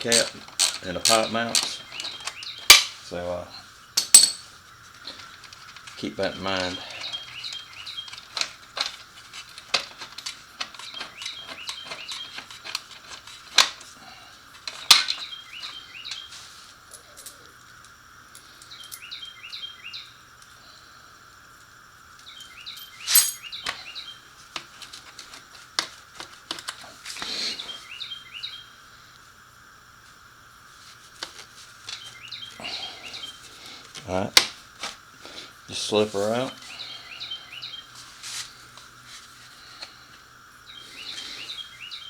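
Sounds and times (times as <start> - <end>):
metal tools clinking: 0.0 - 3.0, 4.0 - 13.8, 16.9 - 17.5, 22.4 - 23.8
bird chirping: 0.0 - 4.2, 6.0 - 8.4, 10.8 - 12.5, 14.8 - 16.4, 18.7 - 20.2, 22.2 - 24.3, 27.3 - 28.8, 31.9 - 33.4, 35.7 - 38.0, 40.6 - 42.0
faint steady hum: 0.0 - 42.0.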